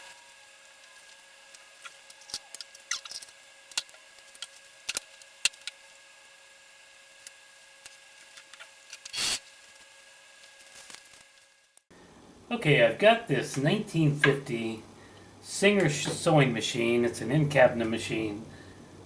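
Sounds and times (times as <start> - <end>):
faint steady hum: 11.9 - 19.0.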